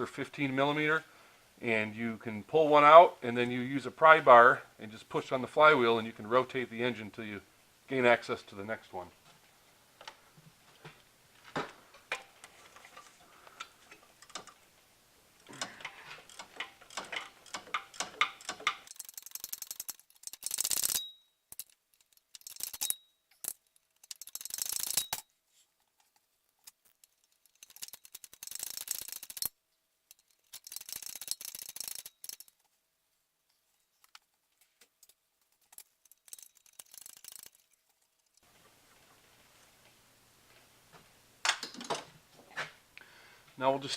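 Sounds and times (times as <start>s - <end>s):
hand ratchet clicking: 15.4s - 25.3s, 26.6s - 29.5s, 30.1s - 32.6s, 35.0s - 38.4s.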